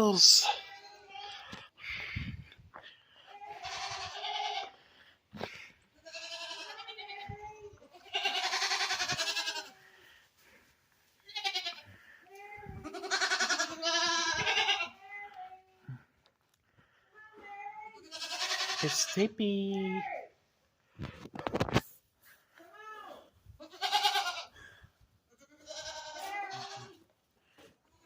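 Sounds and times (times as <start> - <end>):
goats bleating: 3.4 - 10.6, 11.2 - 16.0, 17.9 - 20.0, 23.6 - 28.0.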